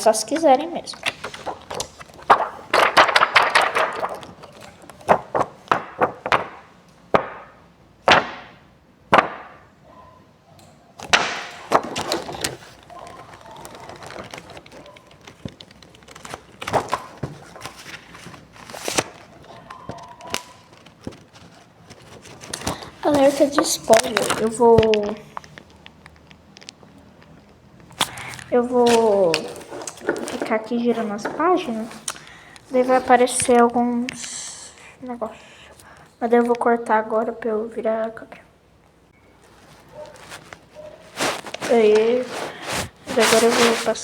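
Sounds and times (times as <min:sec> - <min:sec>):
book handling taps and knocks: 0:01.0 - 0:07.5.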